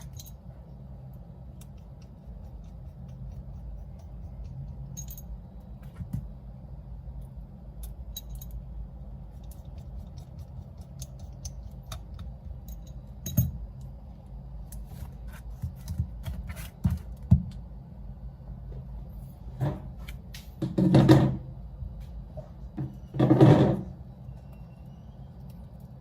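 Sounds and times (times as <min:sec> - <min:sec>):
steady low hum: 0:00.0 - 0:26.0
small tools clicking and tapping: 0:09.4 - 0:13.9.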